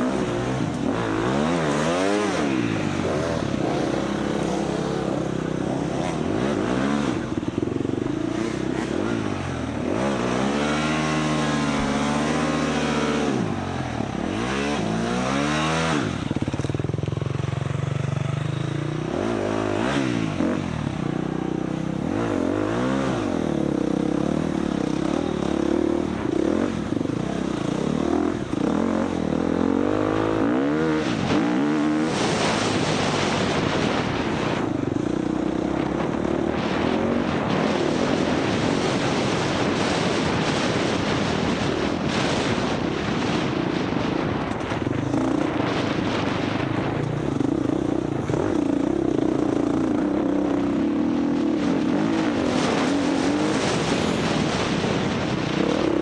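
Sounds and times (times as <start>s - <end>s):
dirt bike engine revving: 0.0s - 56.0s
wind rushing noise: 30.2s - 56.0s.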